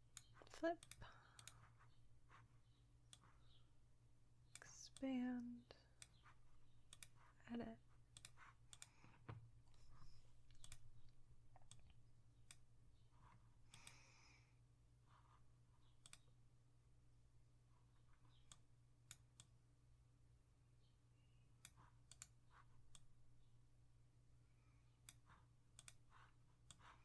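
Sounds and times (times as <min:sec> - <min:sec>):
computer clicks: 0:00.1 - 0:01.9, 0:03.0 - 0:03.6, 0:06.0 - 0:07.3, 0:08.1 - 0:09.3, 0:10.5 - 0:12.7, 0:13.7 - 0:14.1, 0:15.8 - 0:16.3, 0:21.6 - 0:23.1, 0:25.0 - 0:27.0.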